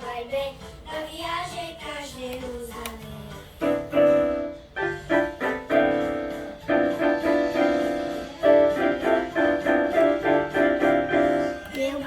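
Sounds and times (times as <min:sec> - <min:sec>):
keyboard playing melody over chords: 0:03.5 - 0:12.0.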